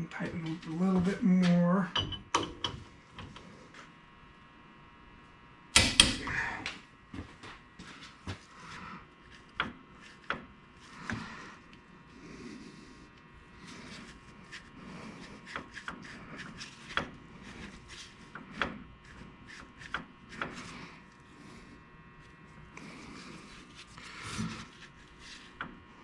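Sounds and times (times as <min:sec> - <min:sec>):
sharp clicks and knocks: 0:05.8 - 0:06.3.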